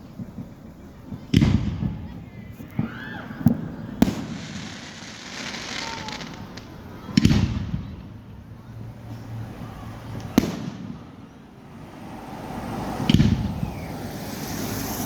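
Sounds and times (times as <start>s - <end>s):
fireworks bangs: 0.0s - 15.0s
fireworks whistling: 0.0s - 15.0s
hissing crackle: 2.6s - 8.3s, 9.0s - 15.0s.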